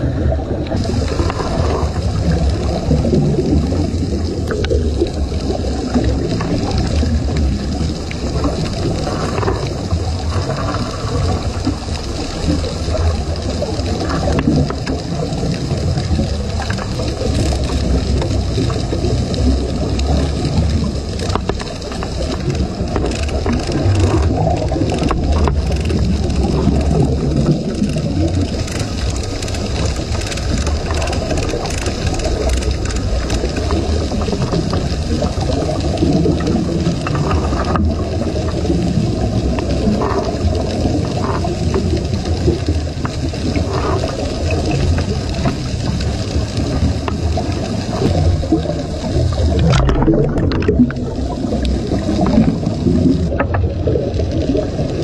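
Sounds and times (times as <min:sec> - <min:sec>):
heavy machinery rumbling: 0:48.2 - 0:53.8.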